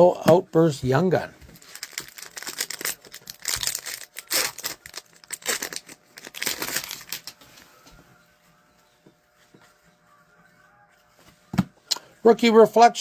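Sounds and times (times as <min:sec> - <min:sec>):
plastic wrapper crinkling: 0:01.5 - 0:07.5.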